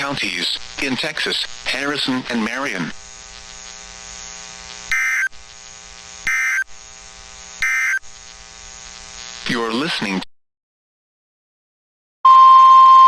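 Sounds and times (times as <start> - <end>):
harsh digital data bursts: 0.0 - 10.2
steady radio hum: 0.0 - 10.3.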